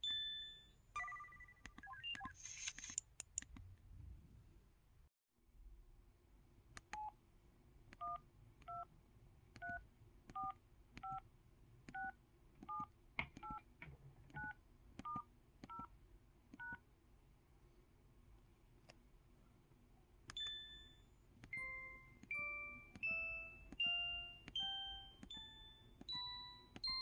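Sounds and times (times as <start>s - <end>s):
phone keypad beeps: 0.0s - 2.4s, 8.0s - 8.9s, 10.4s - 11.2s, 11.9s - 13.6s, 20.3s - 27.0s.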